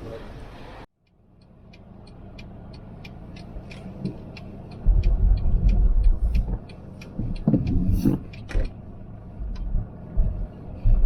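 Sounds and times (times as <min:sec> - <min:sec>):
road noise: 0:00.0 - 0:11.0
light ticking: 0:01.0 - 0:11.0
storm wind buffeting a car: 0:04.0 - 0:11.0.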